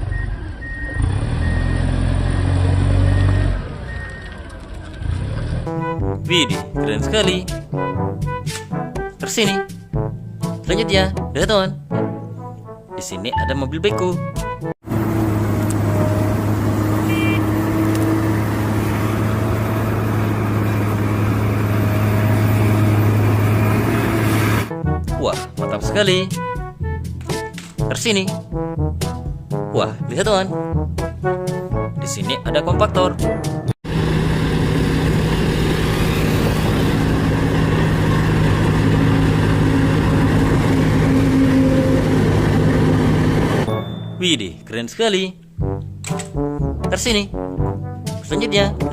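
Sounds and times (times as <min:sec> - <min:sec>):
excavator diesel engine running: 0:00.0 - 0:05.9, 0:14.8 - 0:24.7, 0:33.8 - 0:44.0.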